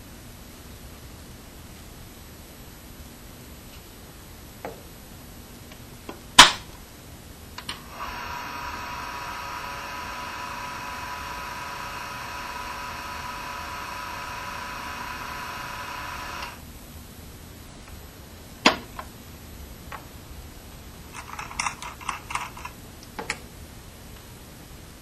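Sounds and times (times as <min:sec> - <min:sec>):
small electric motor whining: 0:07.7 - 0:16.6.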